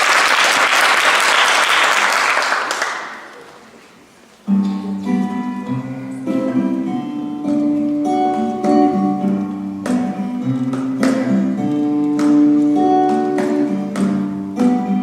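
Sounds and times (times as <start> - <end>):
strummed acoustic guitars: 4.5 - 15.0.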